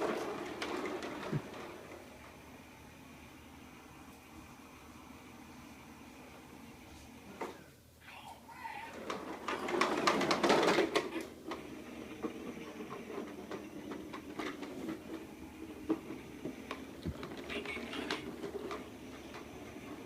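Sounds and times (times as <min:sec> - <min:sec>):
lawn mower rattling: 0:09.1 - 0:11.2.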